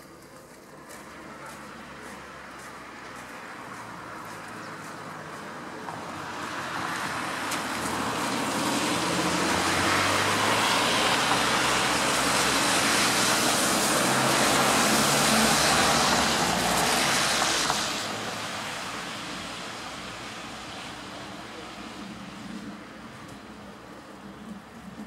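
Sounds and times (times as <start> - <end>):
road vehicle passing: 0.0 - 25.0.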